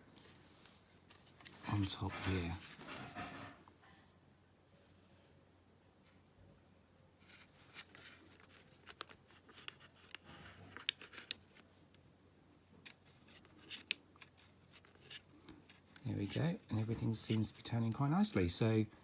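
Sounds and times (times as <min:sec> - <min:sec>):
light scraping: 0:00.2 - 0:04.1.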